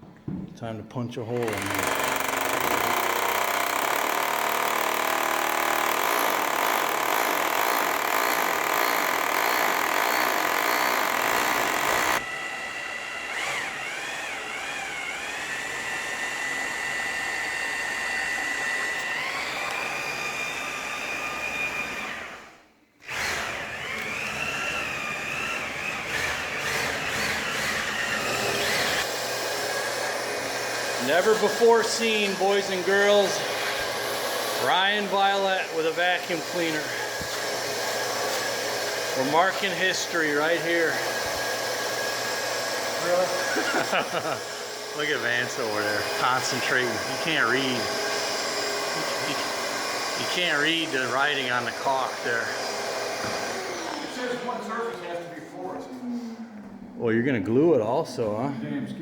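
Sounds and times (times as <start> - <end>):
electric drill running: 1.4 - 54.6
vacuum cleaner whine: 11.2 - 54.6.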